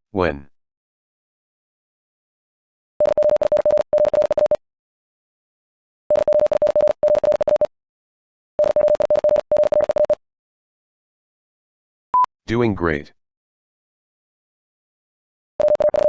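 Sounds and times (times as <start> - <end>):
fast morse code tone: 3.0 - 4.6, 6.1 - 7.7, 8.6 - 10.2, 15.6 - 16.0.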